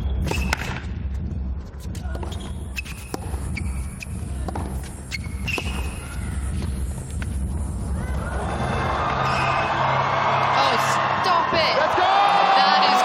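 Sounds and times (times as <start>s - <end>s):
shoes squeaking on court: 1.7s - 7.4s
indistinct crowd voices: 2.0s - 13.0s
tennis ball bouncing: 2.1s - 6.7s.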